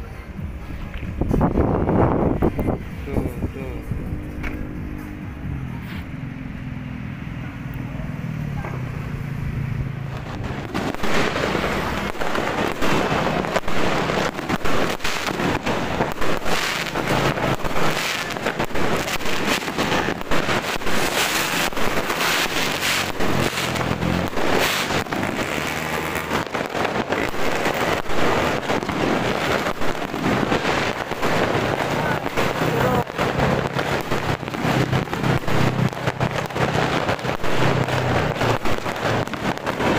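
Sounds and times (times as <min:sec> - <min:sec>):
fireworks bangs and crackles: 0:00.0 - 0:39.9.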